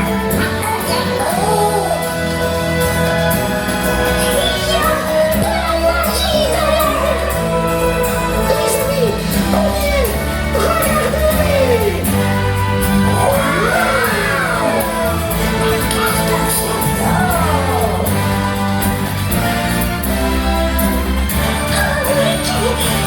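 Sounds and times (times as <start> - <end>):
upbeat show music with singing: 0.0 - 23.0.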